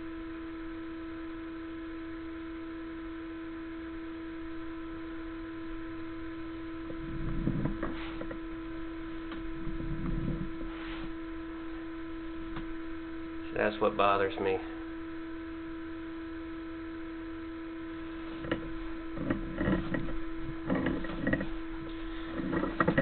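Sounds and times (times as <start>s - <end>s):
electrical mains hum: 0.0s - 23.0s
camera rumbling in drain pipe: 6.9s - 8.4s, 18.4s - 23.0s.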